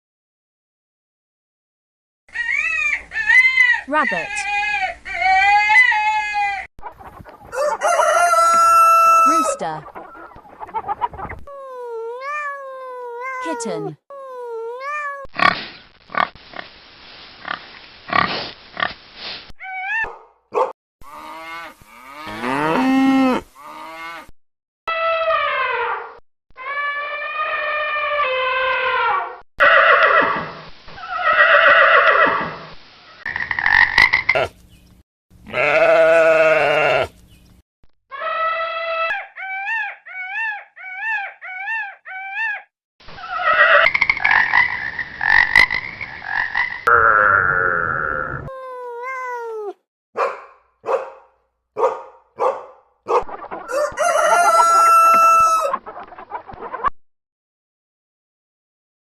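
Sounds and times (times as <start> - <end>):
rooster crowing: 7.5 - 9.6, 53.7 - 55.8
cow mooing: 21.1 - 24.3, 35.5 - 37.1, 46.9 - 48.5
livestock calls: 35.5 - 37.1, 46.9 - 48.5.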